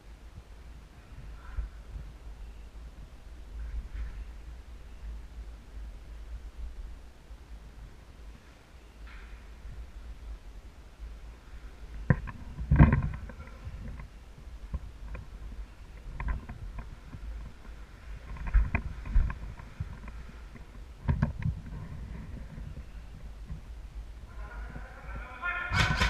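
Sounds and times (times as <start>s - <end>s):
knocks and clatter: 12.0s - 14.1s, 16.0s - 23.7s, 25.7s - 26.0s.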